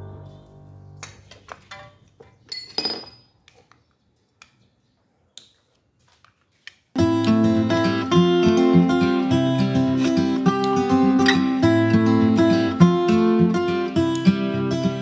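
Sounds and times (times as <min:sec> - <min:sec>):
strummed acoustic guitar music: 0:00.0 - 0:01.0, 0:07.0 - 0:15.0
metal parts and tools clinking: 0:01.2 - 0:03.8
background music: 0:07.0 - 0:15.0.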